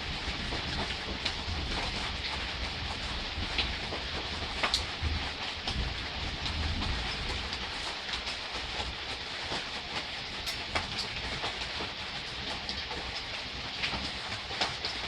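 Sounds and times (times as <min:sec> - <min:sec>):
gentle rain: 0:00.0 - 0:15.0.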